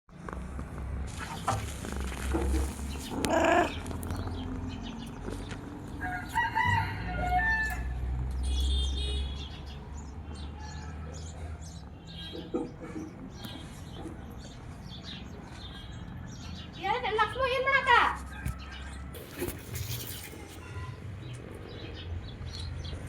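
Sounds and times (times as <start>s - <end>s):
animal calls: 1.8s - 4.3s.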